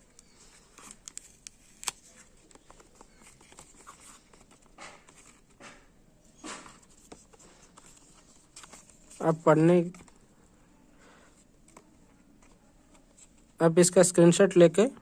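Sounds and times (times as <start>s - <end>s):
paper rustling: 0.2s - 10.2s.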